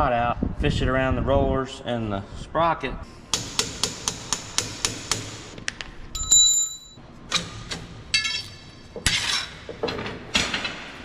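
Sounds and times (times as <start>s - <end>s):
chain links rattling: 6.2s - 7.0s
metallic ring: 6.2s - 7.0s, 8.1s - 9.5s.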